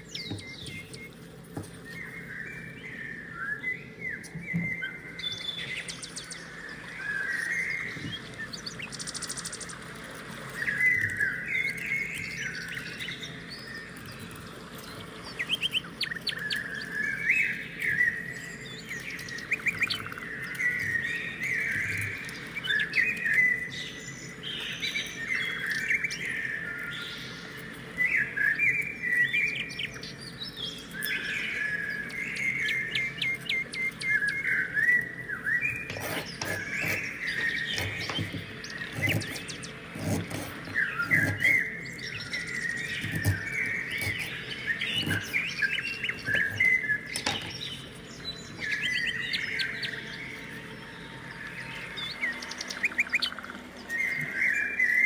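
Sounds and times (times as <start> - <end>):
small birds chirping: 0.0 - 55.0.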